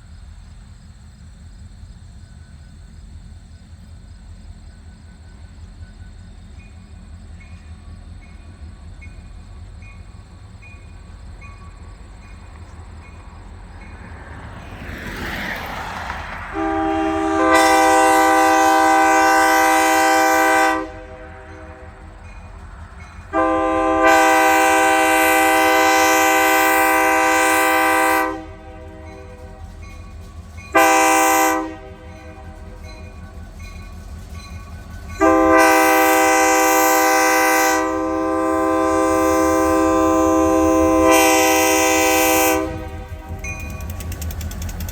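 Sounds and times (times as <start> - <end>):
low rumble of train: 0.0 - 44.9
locomotive air horn blasts: 16.4 - 22.6, 23.2 - 30.0, 30.7 - 33.1, 35.1 - 44.0.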